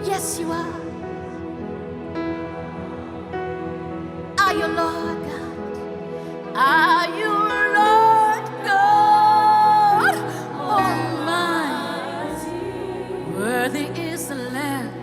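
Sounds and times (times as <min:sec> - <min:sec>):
solo voice singing with vibrato: 0:06.6 - 0:15.0.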